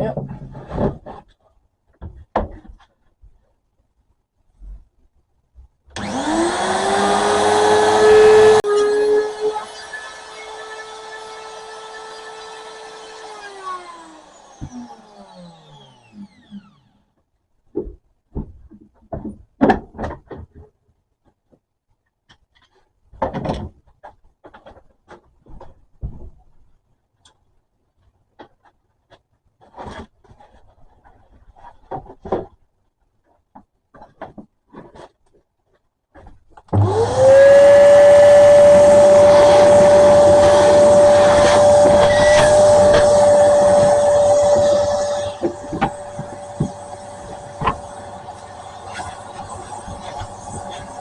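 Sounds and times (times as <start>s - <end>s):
wood scraping and knocking: 0.0s - 3.4s
wood router motor whine: 6.0s - 17.0s, 36.7s - 51.0s.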